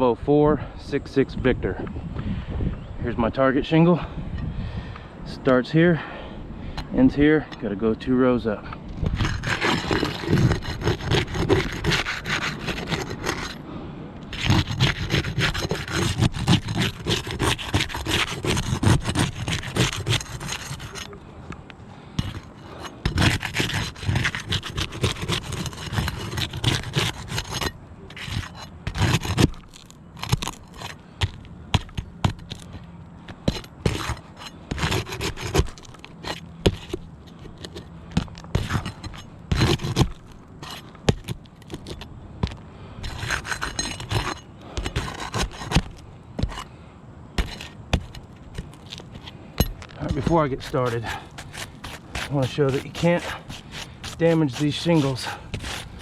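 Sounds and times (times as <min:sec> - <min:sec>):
scraping on shingle roof: 0:08.9 - 0:13.6, 0:14.2 - 0:46.8, 0:47.4 - 0:56.0.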